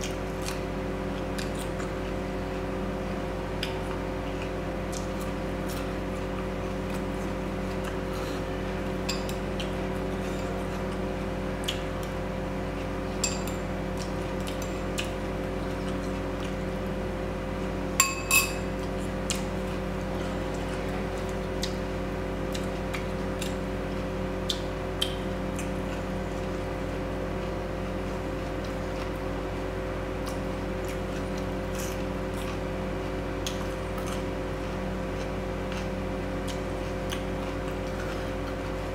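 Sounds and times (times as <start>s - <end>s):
steady background hum: 0.0s - 38.9s
dishware clinking: 18.0s - 18.6s.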